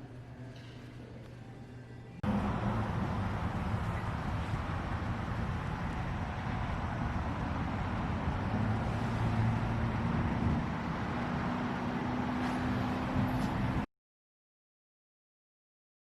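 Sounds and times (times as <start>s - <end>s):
motor vehicle engine hum: 2.2s - 13.9s.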